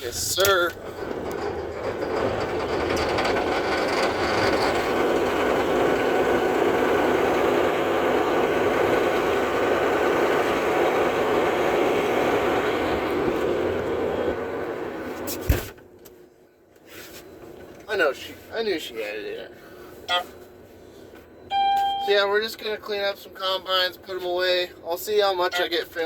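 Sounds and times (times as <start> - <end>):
diesel engine running: 0.0 - 15.7.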